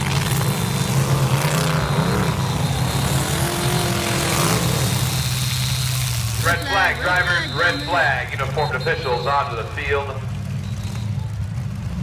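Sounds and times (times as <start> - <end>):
car engines revving: 0.0 - 12.0.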